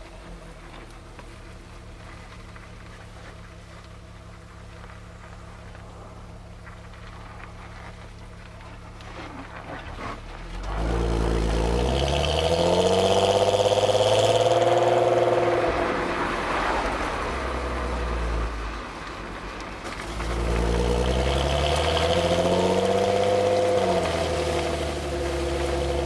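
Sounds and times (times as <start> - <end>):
car exhaust revving: 10.3 - 18.8, 19.8 - 26.0.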